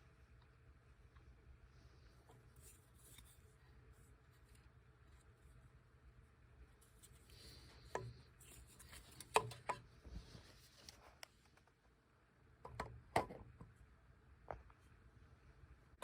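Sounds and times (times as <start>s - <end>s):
low background hum: 0.0s - 16.0s
small hard clicks and knocks: 12.6s - 13.7s.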